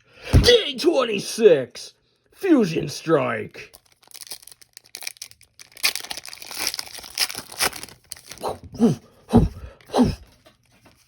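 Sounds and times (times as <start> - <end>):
foil wrapper tearing and crinkling: 3.7 - 8.5.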